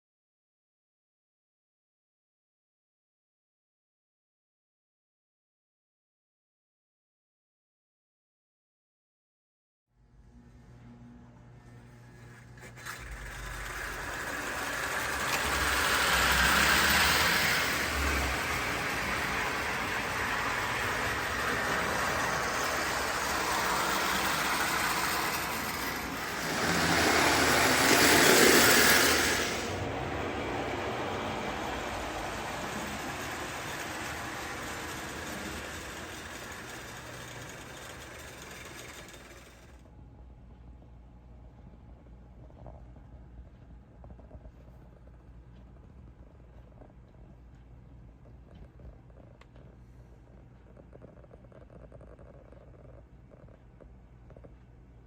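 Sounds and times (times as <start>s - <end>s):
faint low hum: 10.0s - 13.9s, 38.8s - 55.0s
toy locomotive running on track: 12.6s - 39.8s.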